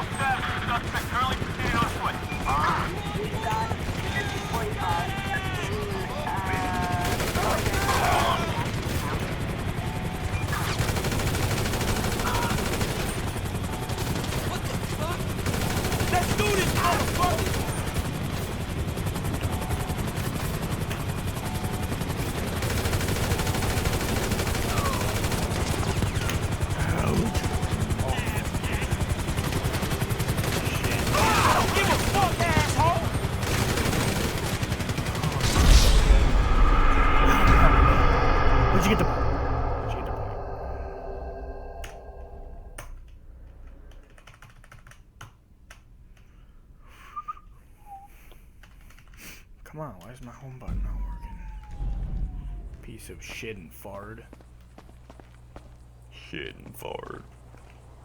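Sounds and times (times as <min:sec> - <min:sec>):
rapid automatic gunfire: 0:00.0 - 0:36.2
steady low rumble: 0:35.4 - 0:44.0, 0:50.7 - 0:54.3
computer keyboard keys clicking: 0:43.7 - 0:46.3, 0:48.6 - 0:49.2.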